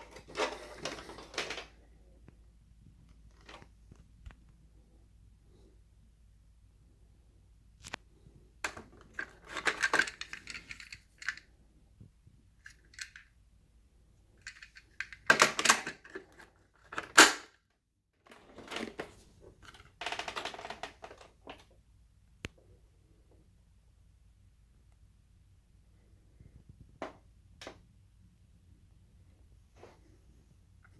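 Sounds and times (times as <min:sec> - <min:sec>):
objects clicking and rattling: 0:00.0 - 0:01.9, 0:08.6 - 0:11.5, 0:12.6 - 0:13.3, 0:14.4 - 0:17.5, 0:18.3 - 0:21.7.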